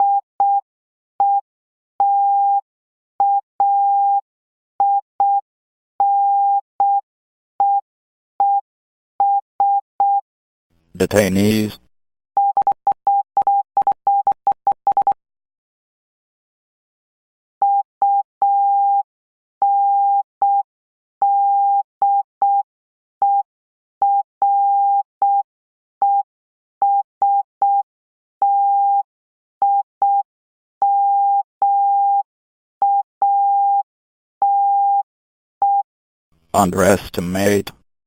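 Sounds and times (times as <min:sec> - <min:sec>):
morse code beeps: 0:12.4 - 0:15.2.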